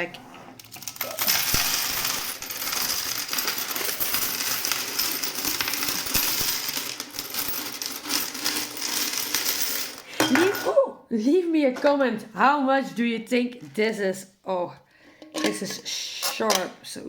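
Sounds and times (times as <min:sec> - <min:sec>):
coins clinking: 0:00.6 - 0:10.7.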